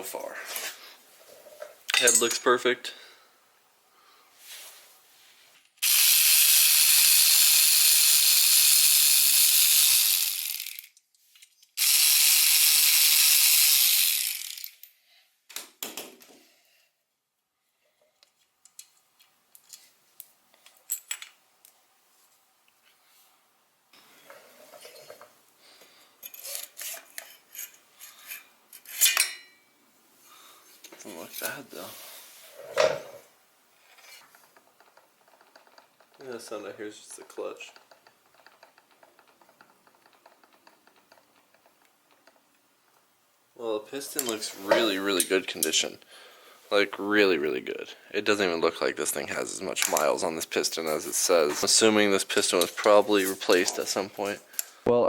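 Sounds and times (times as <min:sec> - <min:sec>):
long steady hisses: 0:02.9 - 0:10.9, 0:29.9 - 0:34.4, 0:41.0 - 0:55.0.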